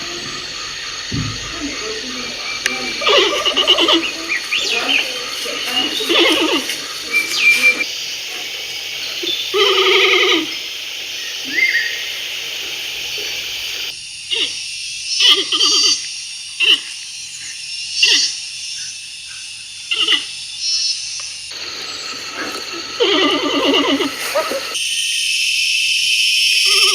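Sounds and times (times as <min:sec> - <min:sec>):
drawn-out animal call: 0:00.0 - 0:10.7, 0:21.6 - 0:24.8, 0:26.6 - 0:26.9
short animal calls: 0:00.0 - 0:10.7.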